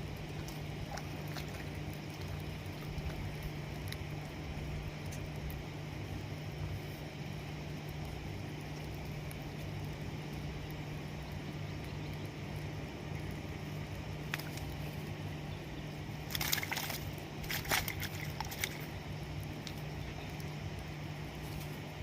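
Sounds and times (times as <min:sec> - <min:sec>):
steady low hum: 0:00.0 - 0:22.0
water splashing: 0:00.1 - 0:04.1, 0:16.1 - 0:20.1.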